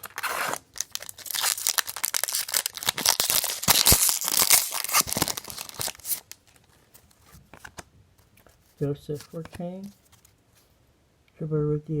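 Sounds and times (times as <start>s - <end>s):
plastic wrapper tearing and crumpling: 0.0s - 6.7s.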